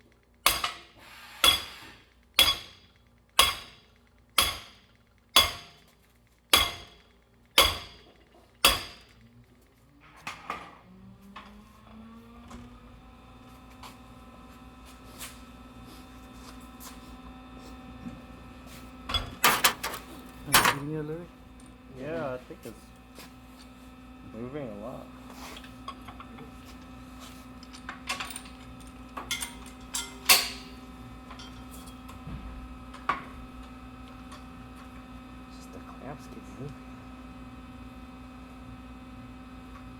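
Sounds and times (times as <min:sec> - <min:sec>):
hammer striking metal vise: 0:00.4 - 0:05.9, 0:06.5 - 0:07.0, 0:07.6 - 0:09.2, 0:29.2 - 0:32.0
metal tools clinking: 0:27.6 - 0:32.1
ringing metal clank: 0:29.2 - 0:30.7.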